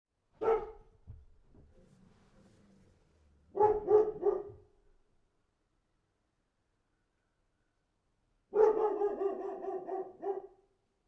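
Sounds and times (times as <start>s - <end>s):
dog barking: 0.4s - 1.0s, 3.5s - 4.7s, 8.5s - 10.7s.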